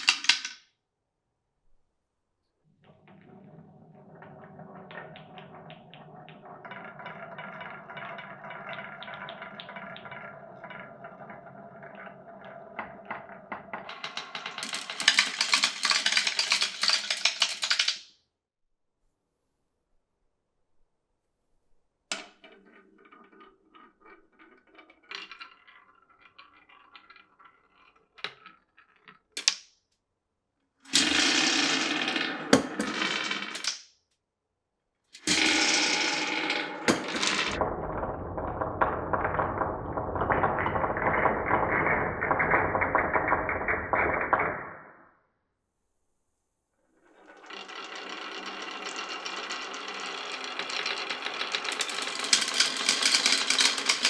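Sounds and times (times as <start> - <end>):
marbles rolling on tracks: 0.0 - 0.6, 2.8 - 18.1, 22.1 - 29.6, 30.9 - 33.8, 35.2 - 45.0, 47.0 - 54.0.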